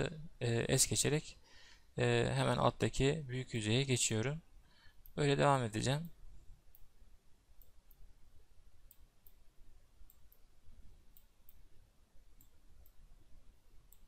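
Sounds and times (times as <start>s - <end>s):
low background hum: 0.0s - 14.0s
computer mouse clicks: 7.6s - 8.1s, 8.8s - 10.5s, 11.1s - 11.7s, 12.4s - 13.0s.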